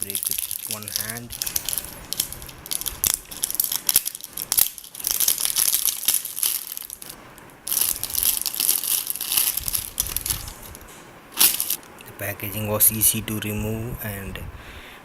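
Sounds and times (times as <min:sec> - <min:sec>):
packaging crinkling and tearing: 0:00.0 - 0:11.9.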